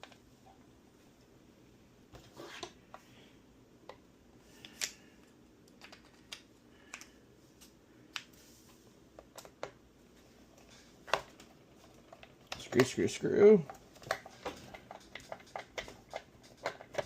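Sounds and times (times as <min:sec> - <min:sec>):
small plastic parts and screws clicking: 0:04.6 - 0:07.2, 0:13.6 - 0:17.0.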